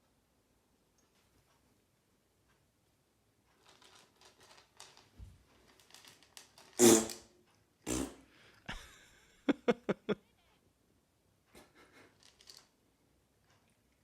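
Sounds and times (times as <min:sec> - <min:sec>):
faint rustling: 0:03.5 - 0:06.8
fart: 0:06.8 - 0:07.3, 0:07.9 - 0:08.3.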